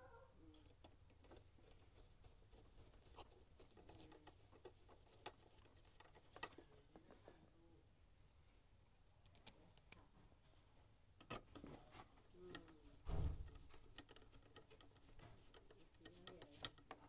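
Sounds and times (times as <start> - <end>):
small plastic parts clicking: 9.2 - 10.0, 12.4 - 17.0.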